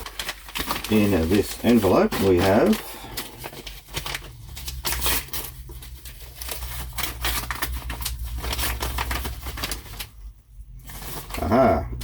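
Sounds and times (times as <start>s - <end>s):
envelope tearing and rustling: 0.0s - 12.0s.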